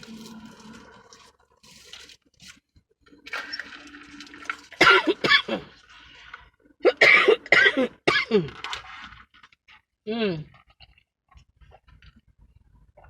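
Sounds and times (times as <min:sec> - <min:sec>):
woman coughing: 0:04.8 - 0:05.7, 0:06.8 - 0:08.6.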